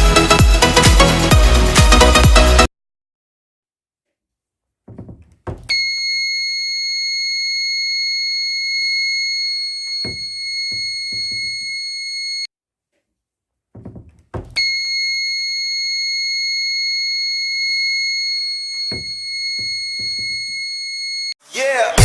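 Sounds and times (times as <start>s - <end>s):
handling knocks: 4.9s - 5.7s, 13.7s - 14.6s, 18.9s - 20.4s
alarm buzzer high-pitched tone: 5.7s - 12.5s, 14.6s - 21.3s.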